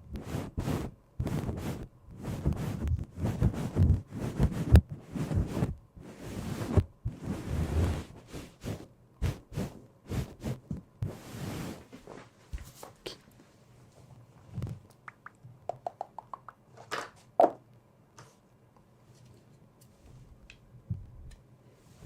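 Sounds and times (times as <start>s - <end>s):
rustling swishes: 0.2s - 12.9s.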